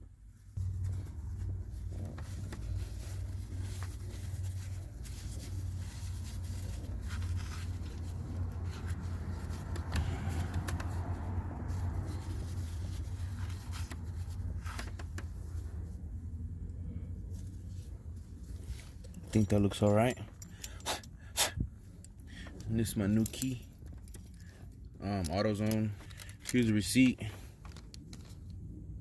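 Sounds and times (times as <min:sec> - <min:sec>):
low mechanical hum: 0:00.0 - 0:29.0
light clicks and scrapes: 0:00.6 - 0:16.1, 0:21.8 - 0:28.7.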